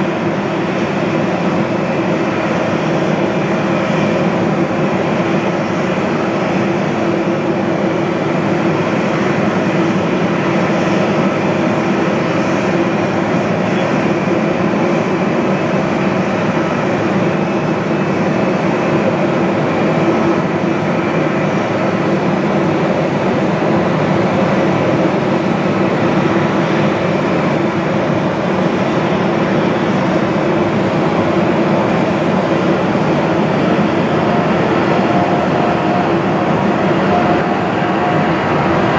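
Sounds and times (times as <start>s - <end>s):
jet engines running: 0.0s - 38.9s
engine whining tones: 32.8s - 38.9s.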